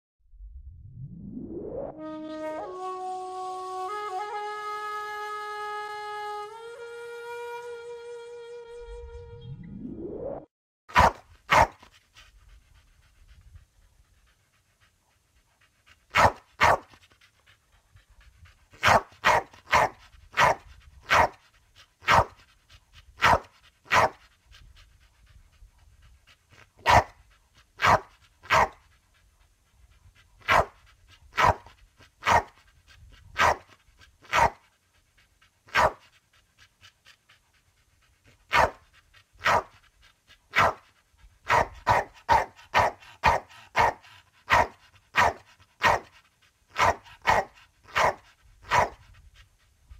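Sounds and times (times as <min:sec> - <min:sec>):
dog barking: 0:10.9 - 0:11.8, 0:16.1 - 0:16.9, 0:18.8 - 0:21.4, 0:22.0 - 0:22.4, 0:23.2 - 0:24.2, 0:26.8 - 0:27.2, 0:27.8 - 0:28.8, 0:30.4 - 0:30.8, 0:31.4 - 0:32.5, 0:33.4 - 0:33.7, 0:34.3 - 0:34.6, 0:35.7 - 0:36.0, 0:38.5 - 0:38.8, 0:39.4 - 0:39.7, 0:40.5 - 0:40.8, 0:41.5 - 0:46.1, 0:46.8 - 0:49.0
dog panting: 0:11.0 - 0:49.9.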